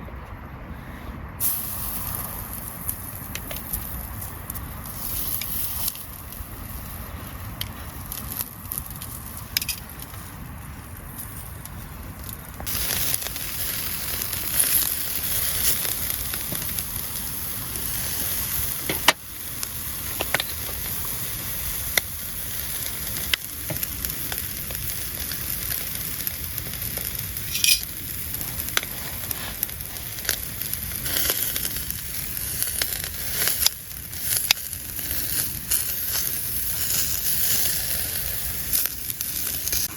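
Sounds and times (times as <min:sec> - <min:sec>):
crackling pops: 0:01.4 - 0:10.3, 0:11.0 - 0:39.9
food sizzling in a pan: 0:12.7 - 0:39.9.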